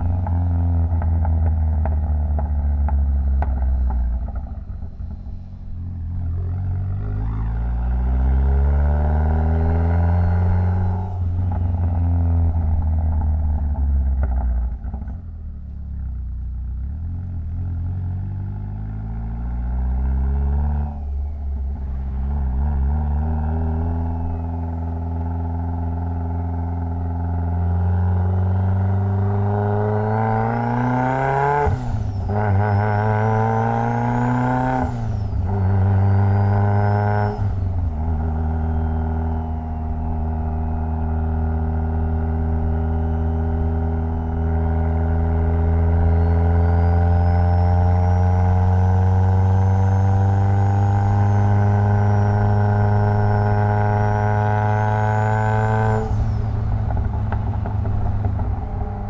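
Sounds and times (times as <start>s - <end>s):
car engine accelerating: 0.0s - 59.0s.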